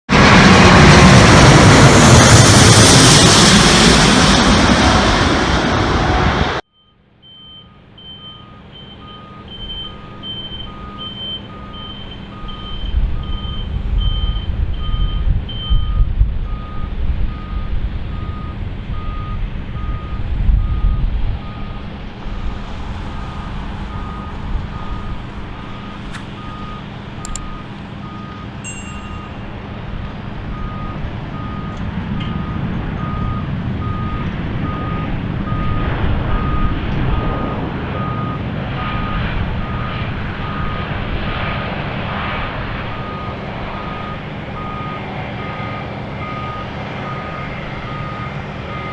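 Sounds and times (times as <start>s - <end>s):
diesel engine rumble: 0.1s - 48.9s
reversing alarms beeping: 6.7s - 41.6s, 43.0s - 48.9s
loud rushing noise: 22.2s - 26.2s.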